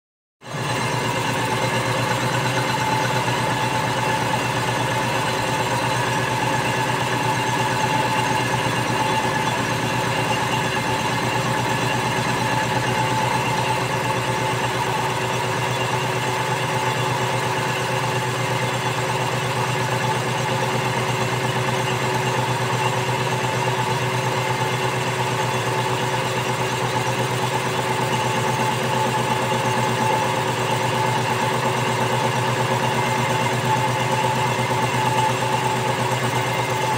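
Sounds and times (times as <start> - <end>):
machine humming steadily: 0.5 - 36.9.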